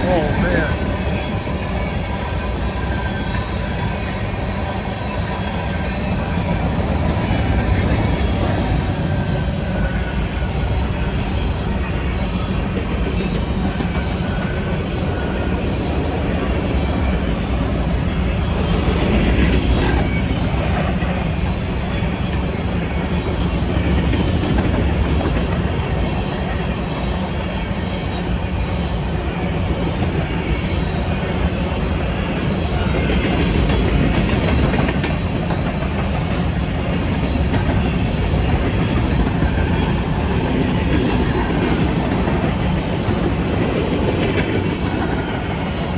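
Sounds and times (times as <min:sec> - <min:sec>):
freight train cars rumbling past: 0:00.0 - 0:45.9.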